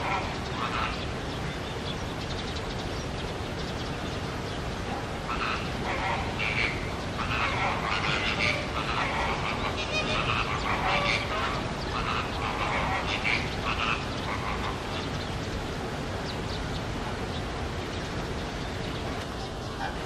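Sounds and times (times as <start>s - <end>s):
steady background hiss: 0.0s - 20.0s.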